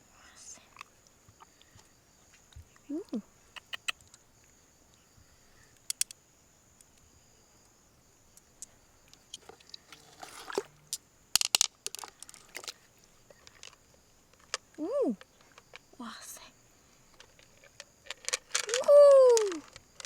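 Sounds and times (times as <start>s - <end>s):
shell clicking: 5.9s - 6.2s
shell scraping and crunching: 11.4s - 14.6s, 17.1s - 18.8s.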